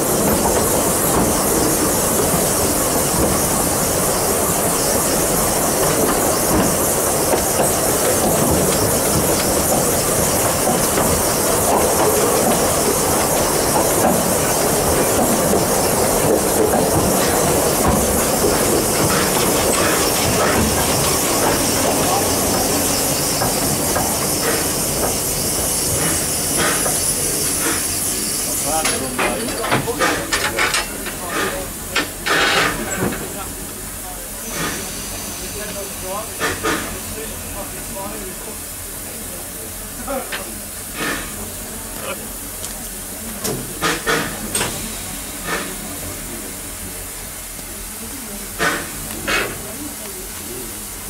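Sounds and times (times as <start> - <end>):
steam locomotive hiss: 0.0 - 51.0
wheels rumbling on track: 0.0 - 51.0.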